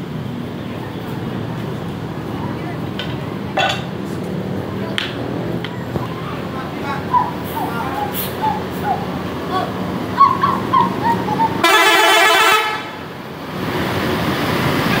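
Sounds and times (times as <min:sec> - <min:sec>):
steady background noise: 0:00.0 - 0:15.0
loud horn blast: 0:11.6 - 0:13.0.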